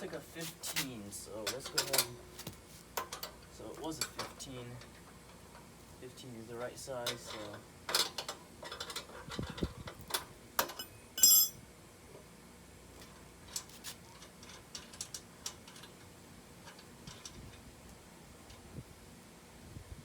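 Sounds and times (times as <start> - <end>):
wrench and metal parts clinking: 10.6 - 11.6
loud ringing metal clank: 10.8 - 11.6.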